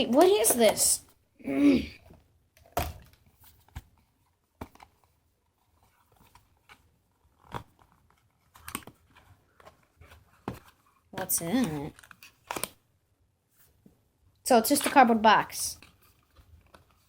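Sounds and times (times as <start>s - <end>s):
cardboard rustling and scraping: 3.0s - 12.7s.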